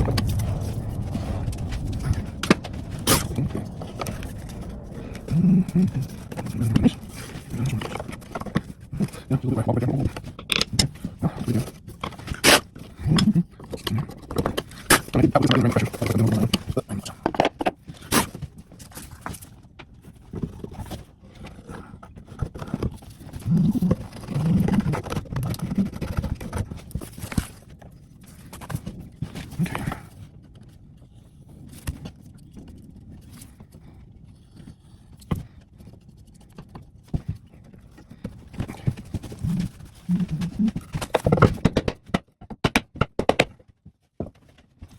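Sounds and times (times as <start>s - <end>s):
wood scraping and rubbing: 0.0s - 43.6s
wooden knocks and taps: 41.0s - 44.5s.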